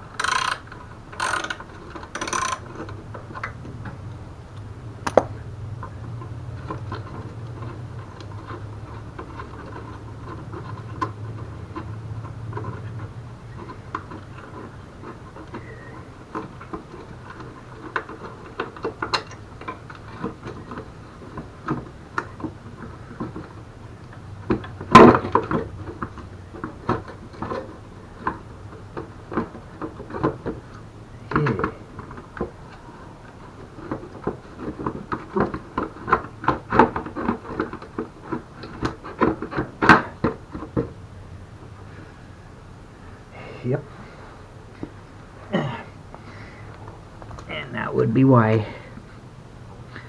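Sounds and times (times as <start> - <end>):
hand tools clicking and clanking: 0.0 - 4.0, 5.0 - 5.4.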